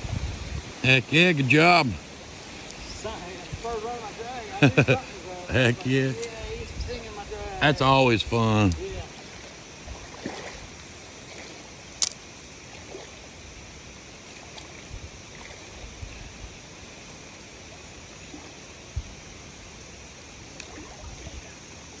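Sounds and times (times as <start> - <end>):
flowing water hiss: 0.0 - 22.0
sharp click: 12.0 - 12.2.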